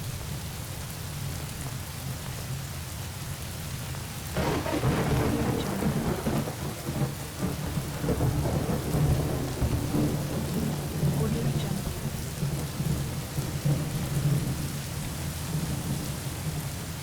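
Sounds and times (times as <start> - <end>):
steady rain falling: 0.0 - 17.0
thunderclap rumbling: 4.4 - 16.6.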